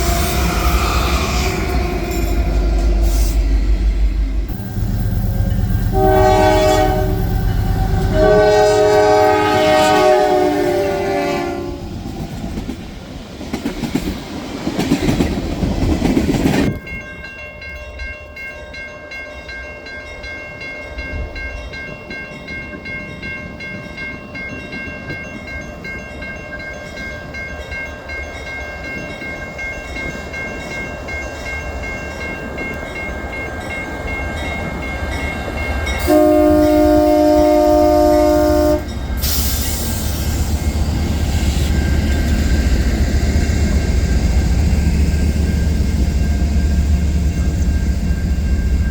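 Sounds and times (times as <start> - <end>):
train horn: 0.0 - 3.6, 4.4 - 12.0, 35.9 - 42.1
passing train rumble: 0.0 - 48.9
rolling rail noise: 0.0 - 48.9.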